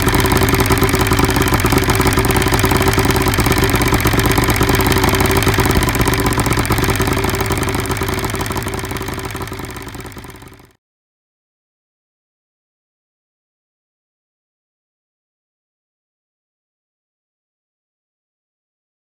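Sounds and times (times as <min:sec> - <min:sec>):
outboard motor idling: 0:00.0 - 0:10.7.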